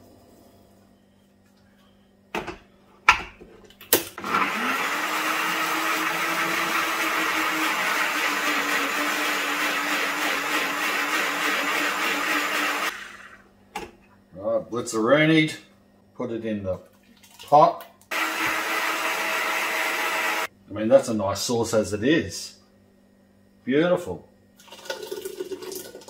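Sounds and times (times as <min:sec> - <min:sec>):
electric blender running: 0:04.2 - 0:13.4, 0:18.1 - 0:20.5.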